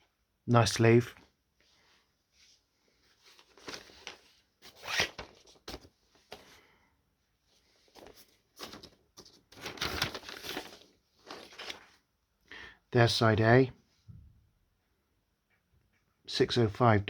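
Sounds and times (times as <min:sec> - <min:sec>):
paper and card rustling: 0:03.0 - 0:06.6, 0:07.6 - 0:12.0.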